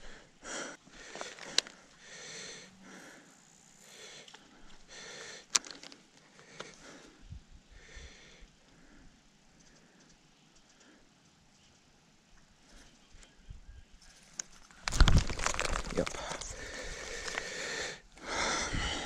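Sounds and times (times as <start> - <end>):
person breathing through nose: 16.1 - 19.0.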